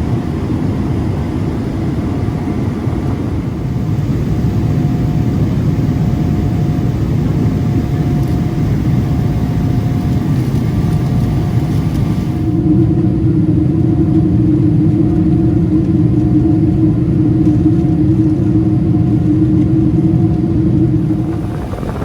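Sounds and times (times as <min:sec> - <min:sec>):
low vehicle rumble: 0:20.7 - 0:22.0
strong low drone: 0:20.7 - 0:22.0.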